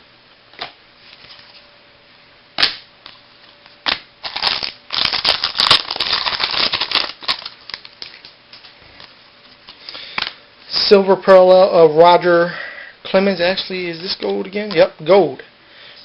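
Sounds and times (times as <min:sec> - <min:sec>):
cards rustling and crinkling: 0:02.6 - 0:10.4.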